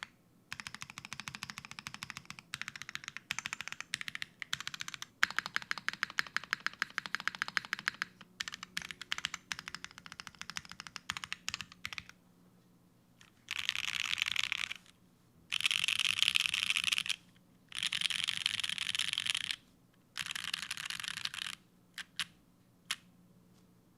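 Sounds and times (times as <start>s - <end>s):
mechanical keyboard typing: 0.0s - 12.2s, 13.5s - 14.9s, 15.5s - 19.6s, 20.2s - 22.3s.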